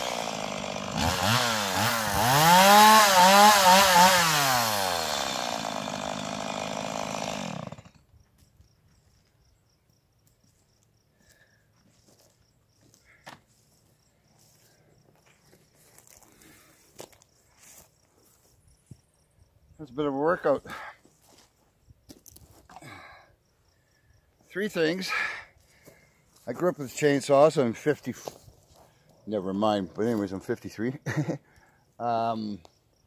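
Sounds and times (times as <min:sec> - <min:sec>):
chainsaw revving: 0:00.0 - 0:08.0.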